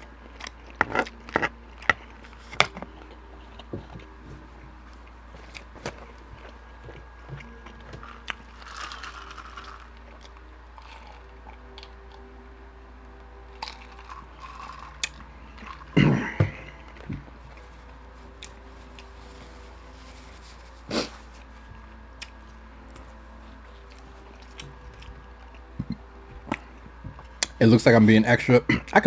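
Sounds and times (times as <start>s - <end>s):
chewing and mouth smacks: 13.6s - 16.3s.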